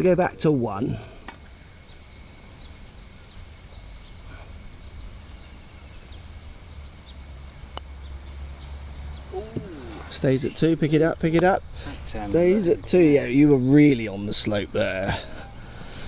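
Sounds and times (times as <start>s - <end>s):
low wind rumble: 0.3s - 16.0s
faint bird chirps: 1.4s - 10.6s.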